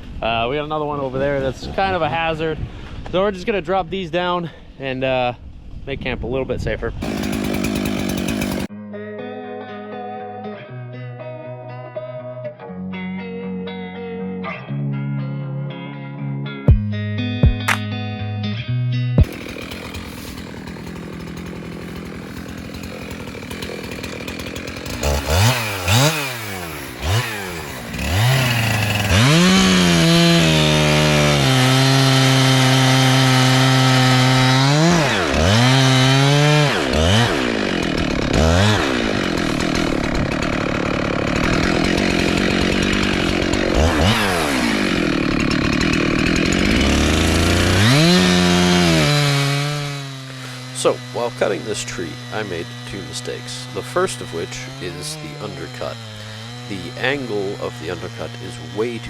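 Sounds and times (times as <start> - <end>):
chainsaw cutting into tree: 7.0 - 8.7, 19.2 - 59.0.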